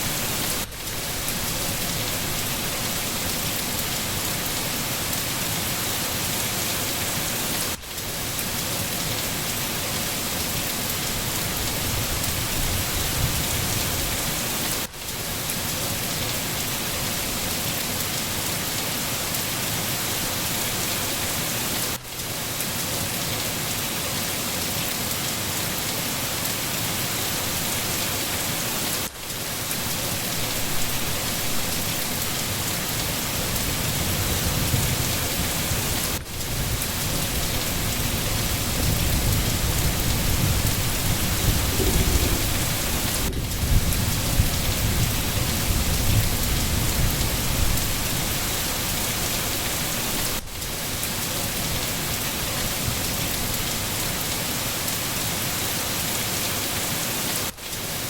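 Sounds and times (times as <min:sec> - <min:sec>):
rain falling on foliage: 0:00.0 - 0:58.0
distant thunder: 0:39.2 - 0:46.1.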